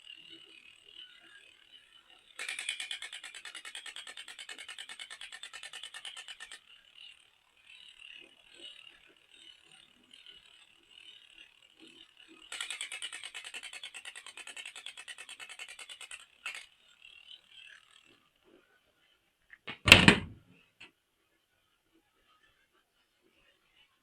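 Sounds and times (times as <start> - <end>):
toy mechanism clicking rapidly: 0.0 - 18.4.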